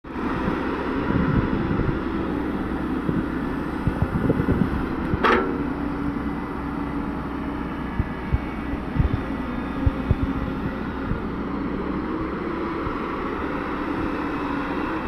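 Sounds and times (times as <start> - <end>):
excavator engine running: 0.1 - 15.0
knocks and clanks: 5.1 - 5.7.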